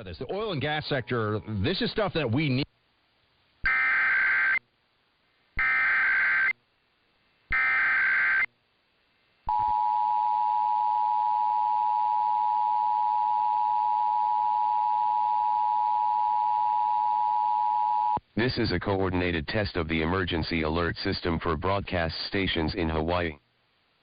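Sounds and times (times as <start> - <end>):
warbling data tone bursts: 3.7 - 4.6, 5.6 - 6.6, 7.5 - 8.5.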